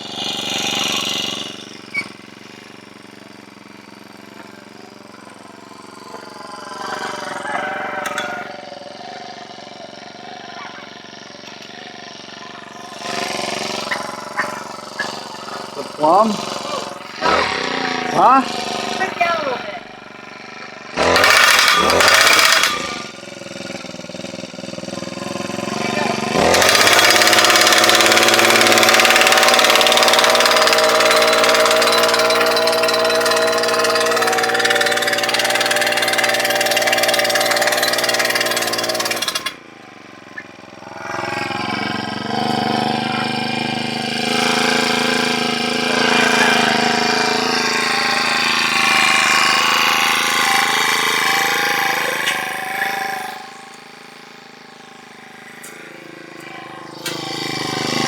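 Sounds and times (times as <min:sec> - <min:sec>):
post driver hammering: 0:26.4 - 0:39.6.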